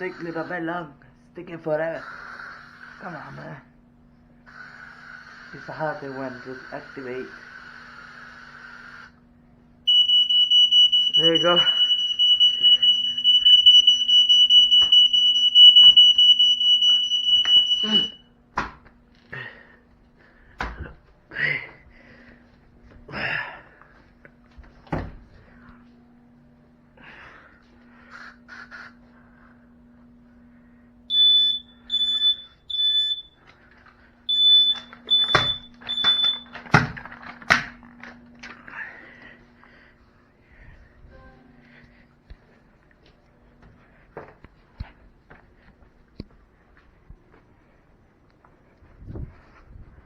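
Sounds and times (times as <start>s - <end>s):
smoke detector alarm tone: 9.9s - 18.4s, 31.0s - 36.9s.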